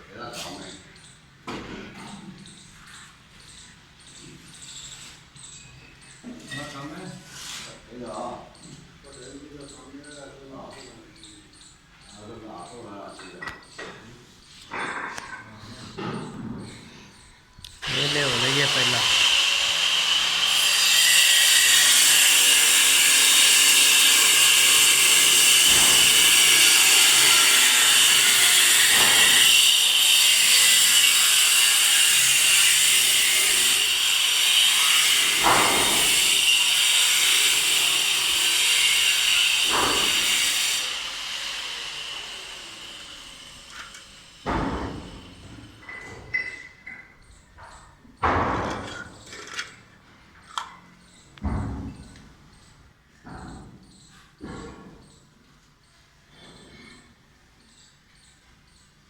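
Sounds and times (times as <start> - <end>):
power tool whining: 17.7 - 47.0
sharp knocks: 35.3 - 36.4, 48.2 - 49.1, 51.4 - 52.1.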